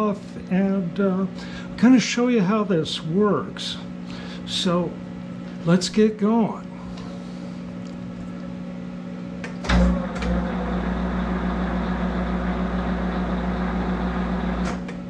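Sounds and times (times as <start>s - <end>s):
lathe spindle deep hum: 6.7s - 15.0s
lathe drive humming: 9.7s - 15.0s.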